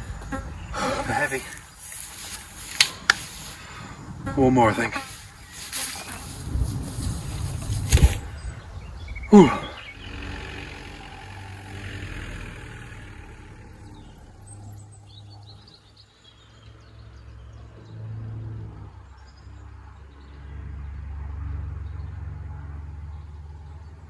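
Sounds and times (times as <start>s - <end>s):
bird chirps: 0.4s - 4.0s, 4.6s - 11.8s.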